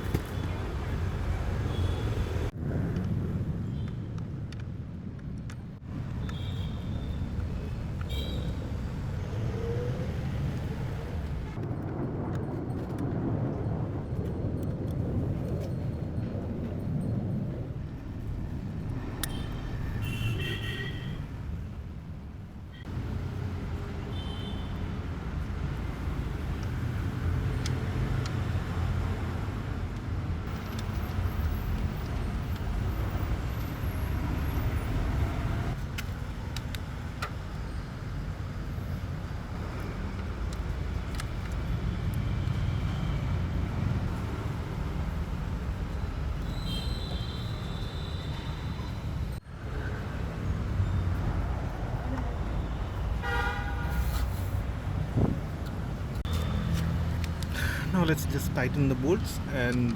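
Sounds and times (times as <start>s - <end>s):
road traffic rumble: 0.0s - 13.8s, 14.4s - 59.9s.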